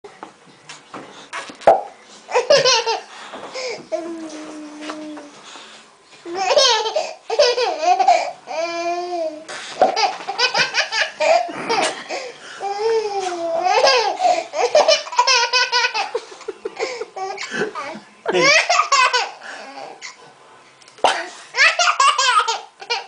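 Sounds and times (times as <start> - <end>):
baby laughing: 2.3 - 3.1, 6.3 - 9.0, 9.8 - 20.2, 21.1 - 23.0.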